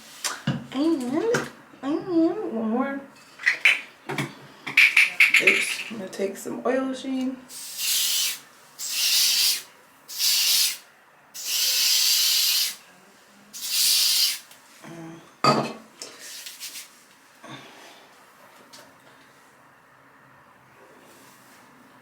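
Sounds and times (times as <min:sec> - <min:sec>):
aerosol can spraying: 0:07.5 - 0:10.8, 0:11.4 - 0:12.8, 0:13.6 - 0:14.4.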